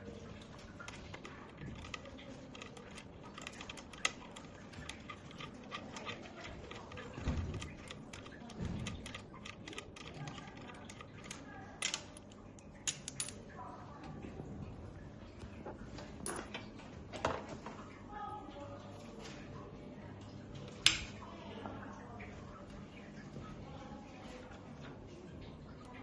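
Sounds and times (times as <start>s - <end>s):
clinks of tools and metal parts: 11.8s - 13.4s.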